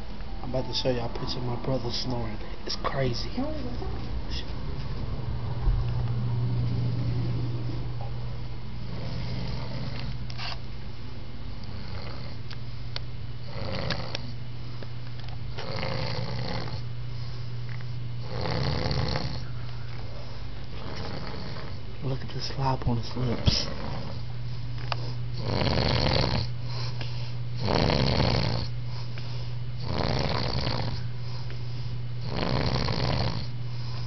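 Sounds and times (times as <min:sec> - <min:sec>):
steady low hum: 0:00.0 - 0:34.0
man snoring loudly: 0:08.9 - 0:10.1, 0:11.7 - 0:12.4, 0:13.4 - 0:14.2, 0:15.6 - 0:16.8, 0:18.2 - 0:19.4, 0:20.8 - 0:21.8, 0:23.3 - 0:24.2, 0:25.4 - 0:26.5, 0:27.6 - 0:28.7, 0:29.8 - 0:31.0, 0:32.2 - 0:33.5.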